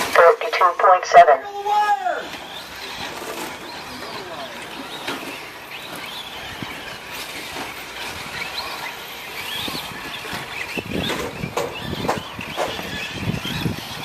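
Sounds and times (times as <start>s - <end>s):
rc truck motors whining: 1.2s - 14.0s
trucks knocking on track: 2.2s - 14.0s.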